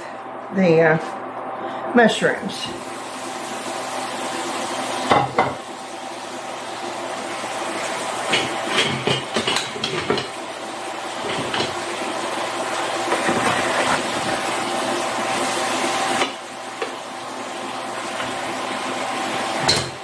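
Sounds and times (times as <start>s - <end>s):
mushrooms sizzling in butter: 2.7s - 20.0s.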